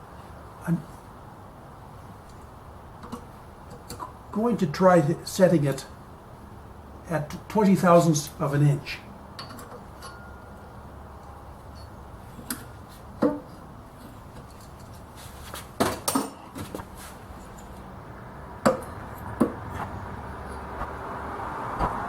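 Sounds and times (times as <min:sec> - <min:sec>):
low steady hum: 0:00.0 - 0:22.0
clicks and taps of metal tools: 0:03.0 - 0:04.2, 0:09.4 - 0:10.3.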